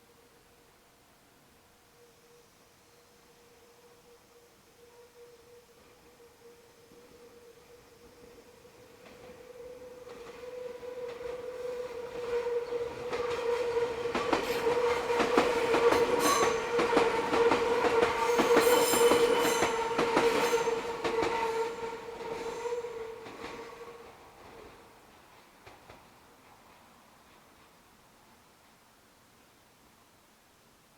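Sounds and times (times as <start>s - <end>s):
train wheels squealing on rail: 8.5s - 24.0s.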